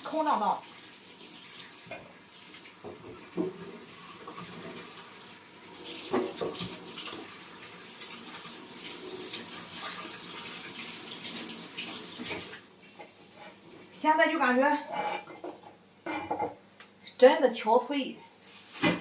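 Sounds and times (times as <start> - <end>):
water running from a tap: 0.0 - 14.6.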